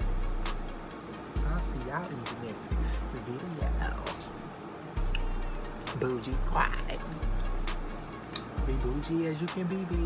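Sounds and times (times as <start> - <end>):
hi-hat ticks: 0.0 - 4.3, 5.0 - 10.0.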